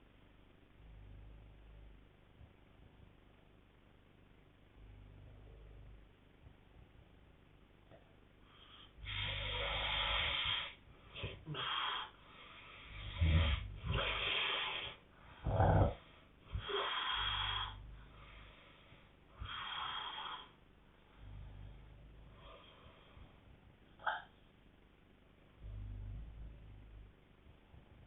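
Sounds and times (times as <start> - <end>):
hissing breaths: 8.5 - 23.4
people snoring: 9.0 - 12.2, 12.8 - 18.0.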